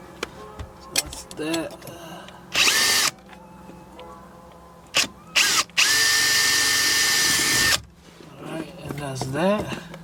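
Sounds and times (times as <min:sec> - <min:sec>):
power drill motor whining: 0:02.5 - 0:03.2, 0:04.9 - 0:07.8.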